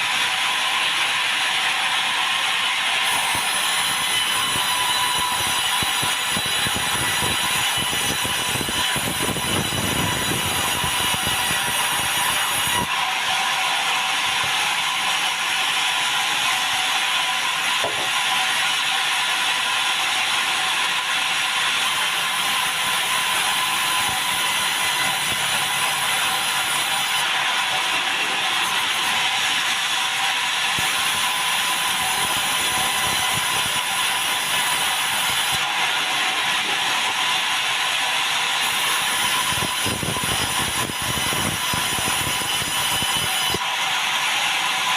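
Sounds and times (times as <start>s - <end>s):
saw blade whining through wood: 0.0s - 44.9s.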